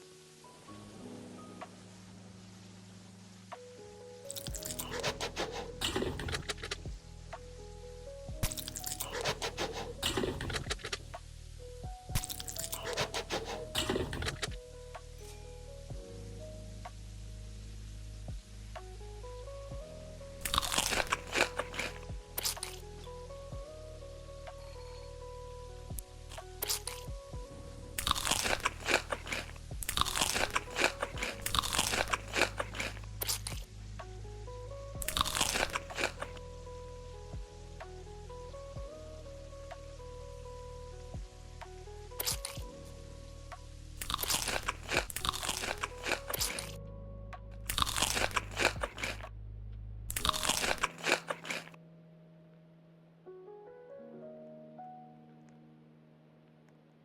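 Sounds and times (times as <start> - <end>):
background music: 0.0 - 57.0
crunchy chewing of crisp food: 4.3 - 6.8, 8.4 - 11.0, 12.2 - 14.5, 20.4 - 22.8, 26.6 - 27.1, 28.0 - 33.7, 35.0 - 36.4, 42.2 - 42.6, 44.0 - 46.8, 47.7 - 49.3, 50.1 - 51.8.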